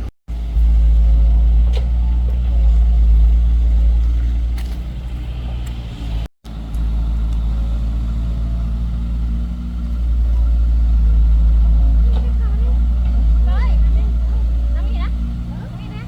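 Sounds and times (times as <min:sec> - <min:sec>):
excavator engine droning: 0:00.0 - 0:16.0.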